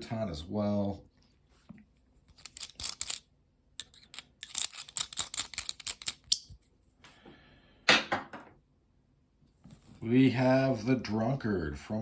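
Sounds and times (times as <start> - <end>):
metal pen mechanism clicking: 2.4 - 3.2, 3.8 - 6.6.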